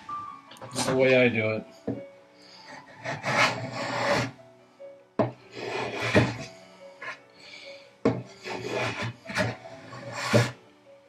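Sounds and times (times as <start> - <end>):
hand tool scraping wood: 2.7 - 4.4, 5.5 - 7.2, 8.1 - 10.6.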